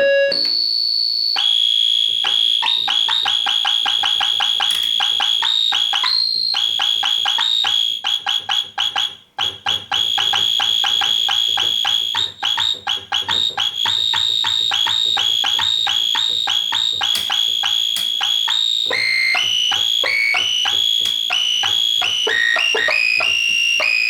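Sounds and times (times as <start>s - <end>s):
pulsing synthesizer tone: 10.1s - 24.0s.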